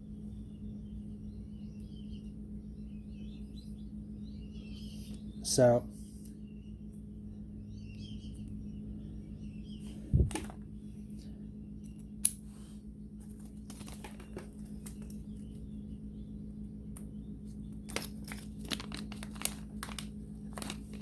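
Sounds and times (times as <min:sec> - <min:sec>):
steady low hum: 0:00.0 - 0:21.0
crinkling: 0:13.2 - 0:15.4, 0:17.8 - 0:21.0
small metal parts clicking: 0:17.9 - 0:21.0.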